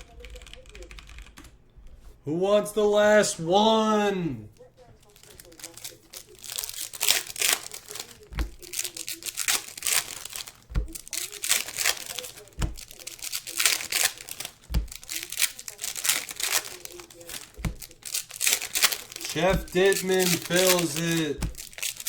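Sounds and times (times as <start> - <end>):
plastic wrapping crinkling: 4.5 - 22.0
soft low thumps: 10.1 - 11.1, 14.6 - 15.1.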